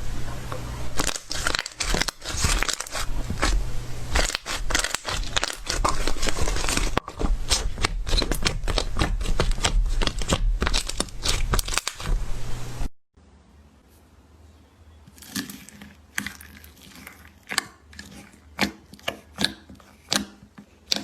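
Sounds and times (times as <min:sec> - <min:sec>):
slime crackling and popping: 0:00.9 - 0:12.2.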